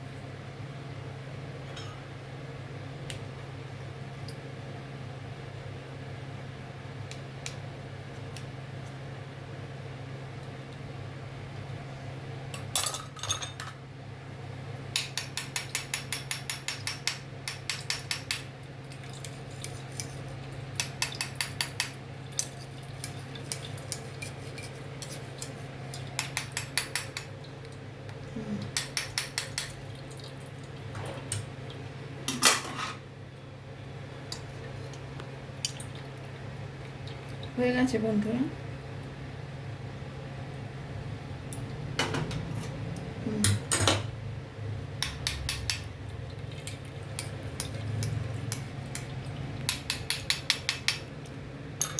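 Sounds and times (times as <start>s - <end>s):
utensil clinking against pot: 49.7s - 51.1s.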